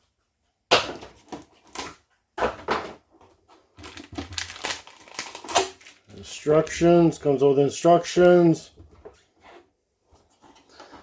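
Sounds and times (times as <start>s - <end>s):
packaging crinkling and rustling: 3.5s - 6.9s.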